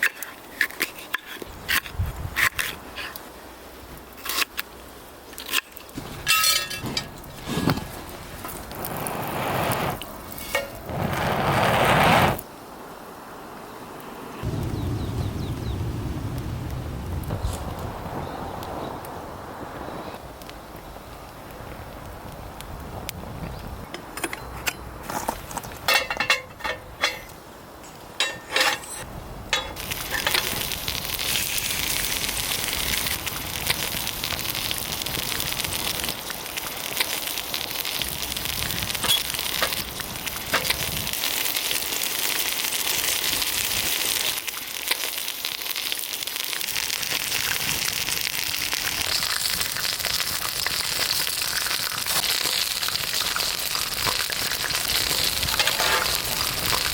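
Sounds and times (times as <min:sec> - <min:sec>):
wood fire crackling and hissing: 0:00.0 - 0:23.9, 0:25.0 - 0:56.9.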